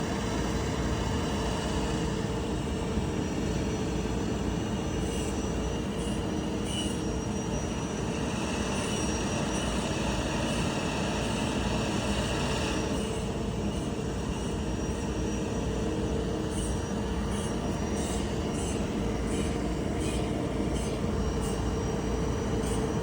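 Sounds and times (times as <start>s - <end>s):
combine harvester running: 0.0s - 23.0s
faint high whine: 0.0s - 23.0s.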